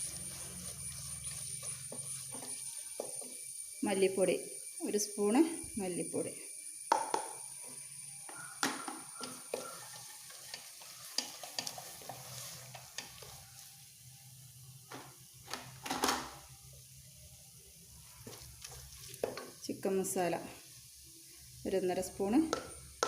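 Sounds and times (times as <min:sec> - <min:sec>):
spoon scraping a pan: 0:00.0 - 0:03.5, 0:08.3 - 0:13.7
masala sizzling in a pan: 0:00.0 - 0:23.0.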